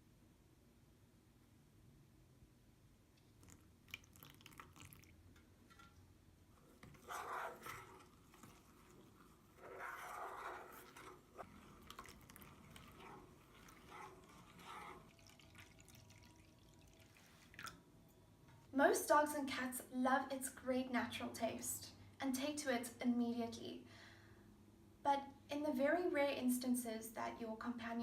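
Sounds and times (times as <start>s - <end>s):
water dripping: 3.2s - 6.0s, 10.9s - 17.9s
water splashing in a bowl: 3.3s - 5.9s, 6.8s - 17.8s.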